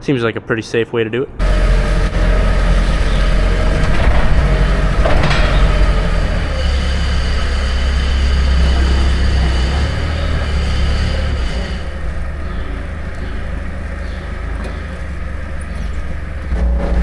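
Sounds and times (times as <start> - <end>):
forklift engine running: 1.4 - 17.0
sharp metal clank: 5.0 - 6.1.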